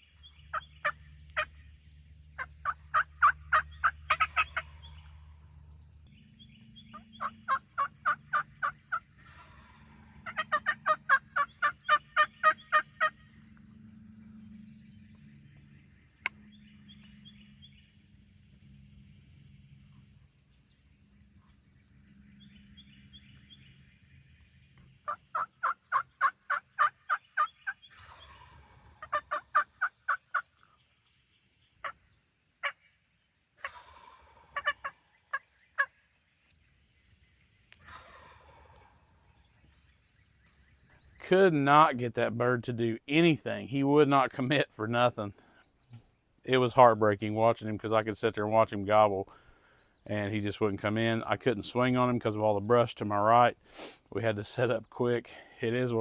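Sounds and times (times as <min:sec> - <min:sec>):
turkey calling: 0:00.0 - 0:01.6, 0:02.4 - 0:05.3, 0:06.8 - 0:13.7, 0:24.8 - 0:30.9, 0:31.8 - 0:33.0, 0:33.6 - 0:36.0, 0:37.7 - 0:39.8.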